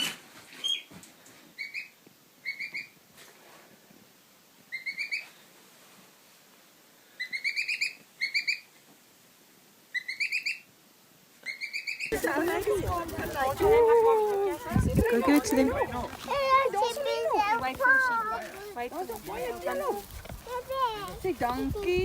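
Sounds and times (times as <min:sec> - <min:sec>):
gosling peeping: 0:11.8 - 0:22.0.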